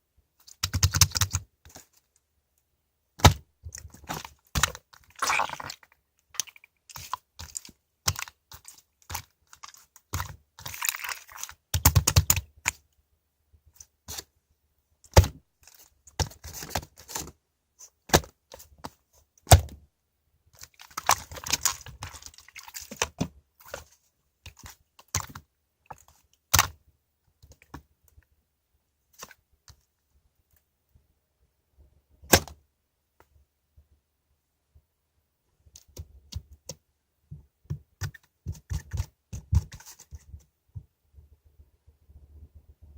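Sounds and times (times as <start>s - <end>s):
slime squelching and clicking: 3.2s - 12.8s, 20.6s - 23.8s.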